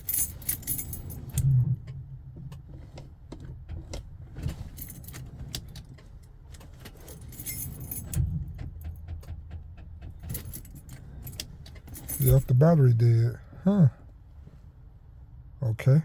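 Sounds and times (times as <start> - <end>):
car keys jangling: 0.0 - 1.6, 4.4 - 12.8
key clicking in ignition: 4.8 - 12.5.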